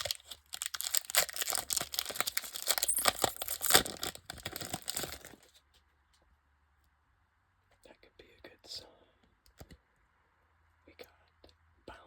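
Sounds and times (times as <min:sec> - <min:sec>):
foil wrapper crinkling and tearing: 0:00.0 - 0:05.5.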